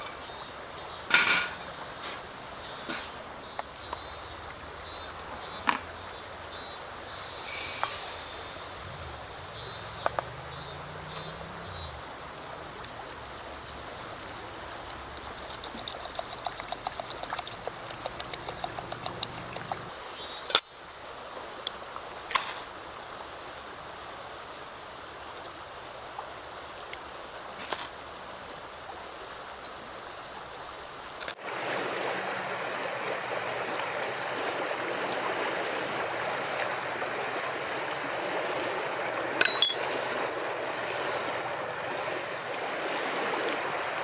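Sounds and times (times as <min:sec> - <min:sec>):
flowing water rushing: 0:00.0 - 0:44.0
small rapid crackles: 0:12.8 - 0:19.9.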